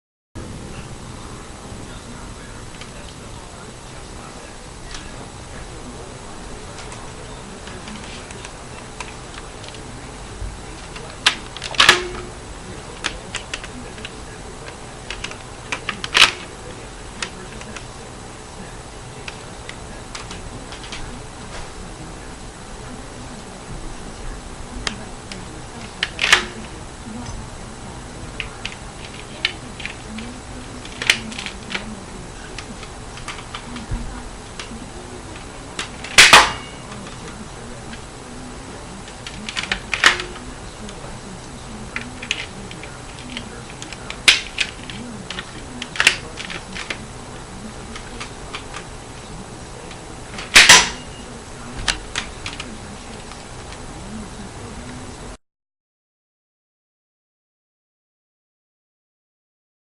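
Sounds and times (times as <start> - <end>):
sharp loud plastic snaps: 11.2 - 12.3, 15.1 - 16.5, 26.0 - 26.8, 35.8 - 37.0, 39.2 - 40.4, 42.0 - 47.0, 50.4 - 51.0.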